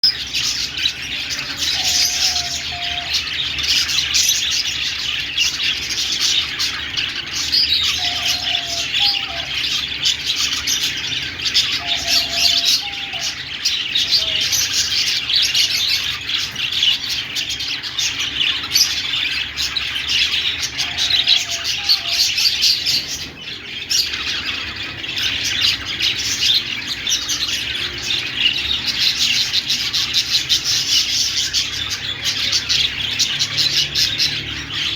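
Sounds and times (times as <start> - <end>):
budgerigars chattering and chirping: 0.0 - 34.9.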